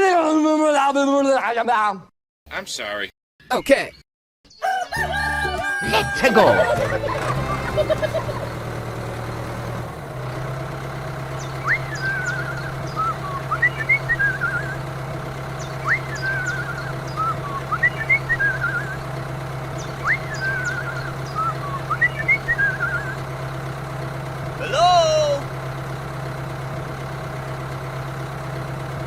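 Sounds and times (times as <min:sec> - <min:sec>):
whistled chirping phrase: 0:11.4 - 0:14.8, 0:15.6 - 0:19.0, 0:19.8 - 0:23.2.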